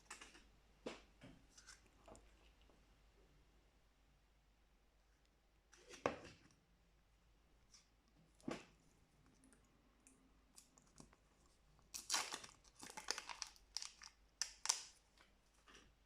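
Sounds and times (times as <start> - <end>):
plastic packaging crinkling: 11.9 - 15.0.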